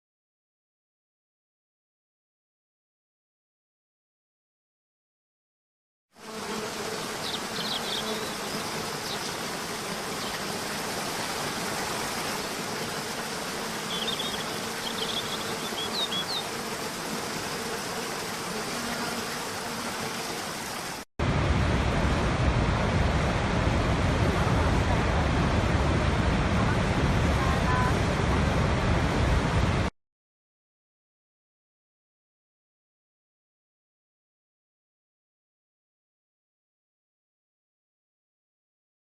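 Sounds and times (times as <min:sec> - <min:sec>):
bird chirps: 0:07.2 - 0:09.3, 0:13.9 - 0:16.4
deep rush of water: 0:07.2 - 0:17.5, 0:19.9 - 0:29.9.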